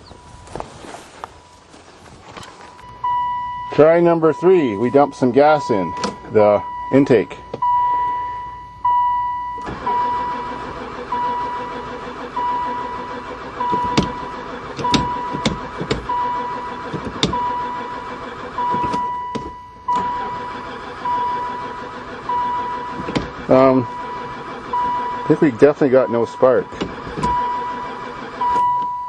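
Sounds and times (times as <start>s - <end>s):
warning chime: 2.6s - 11.8s, 23.5s - 29.0s
starter cranking engine: 9.5s - 29.0s.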